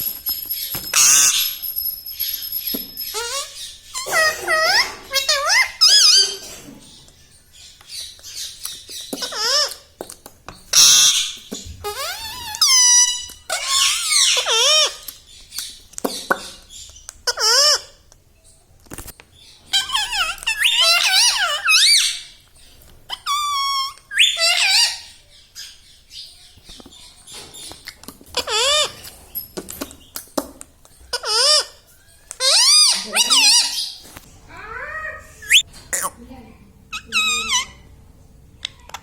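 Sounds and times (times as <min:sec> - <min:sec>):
parakeet squawks and whistles: 0:00.4 - 0:06.4, 0:10.7 - 0:15.1, 0:19.7 - 0:22.4, 0:23.1 - 0:26.3.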